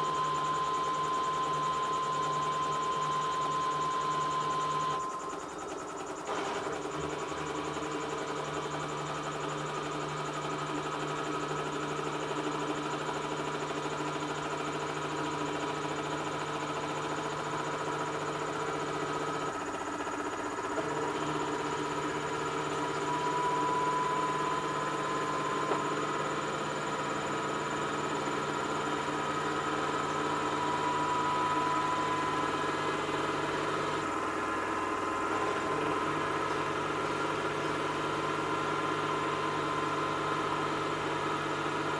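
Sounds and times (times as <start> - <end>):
washing machine motor humming: 0.0 - 41.9
faint rising whine: 22.3 - 41.0.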